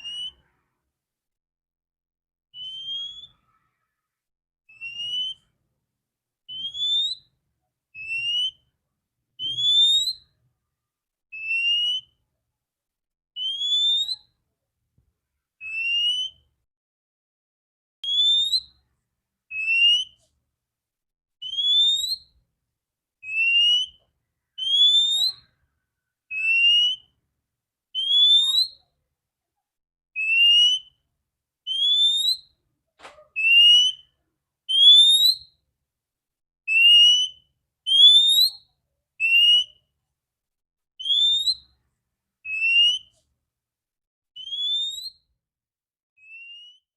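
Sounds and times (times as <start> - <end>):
bird giving short whistled calls: 2.6 - 3.6, 4.7 - 5.5, 33.2 - 34.1.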